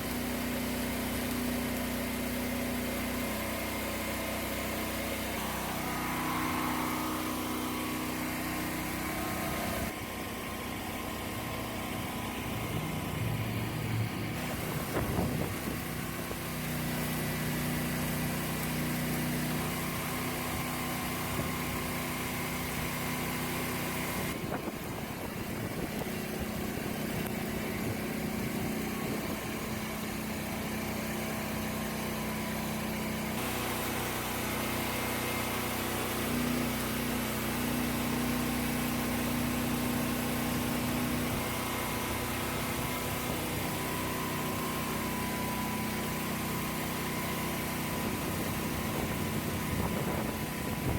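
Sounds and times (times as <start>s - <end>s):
welding machine engine running: 0.0s - 50.9s.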